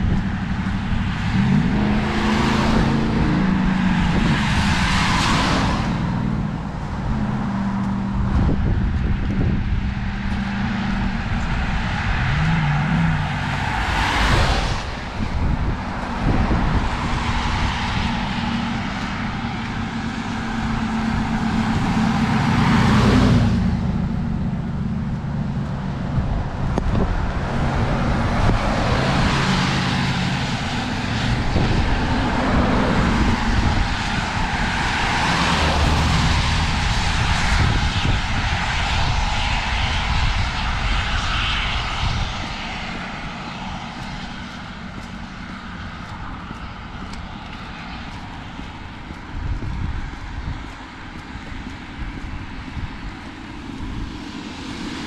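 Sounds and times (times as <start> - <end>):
car tyres hissing on wet road: 0.0 - 24.0, 25.6 - 55.0
wind rumble on microphone: 0.0 - 55.0.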